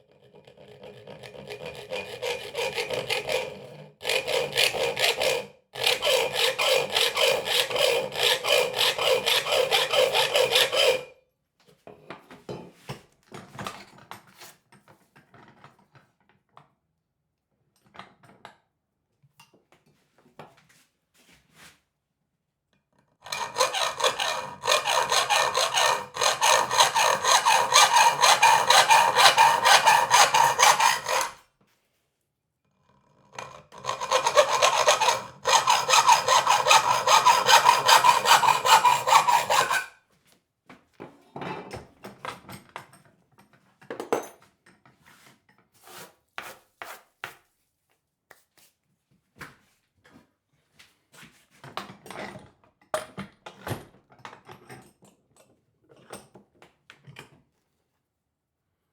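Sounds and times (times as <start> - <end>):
hand saw cutting wood: 0.2 - 11.1, 23.2 - 31.4, 33.4 - 40.0.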